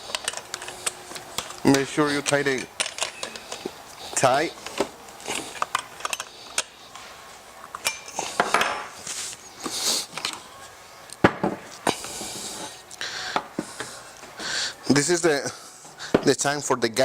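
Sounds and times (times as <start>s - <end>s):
metal wrench clinking and scraping: 0.0s - 3.6s, 4.6s - 6.7s, 7.7s - 9.0s.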